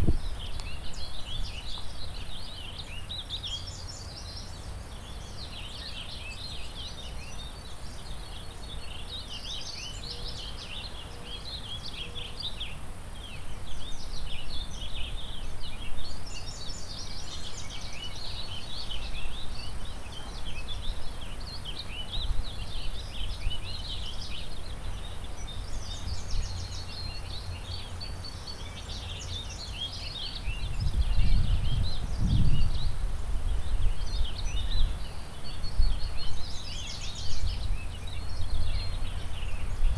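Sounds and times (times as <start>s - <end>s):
wind gusts on microphone: 0.0s - 1.7s, 30.4s - 39.9s
songbirds singing: 0.0s - 39.9s.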